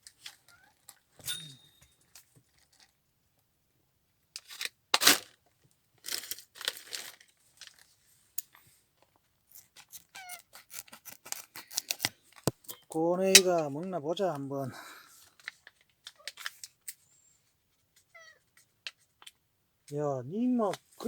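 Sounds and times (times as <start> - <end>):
packaging tearing and crinkling: 6.0 - 7.9, 9.5 - 12.5.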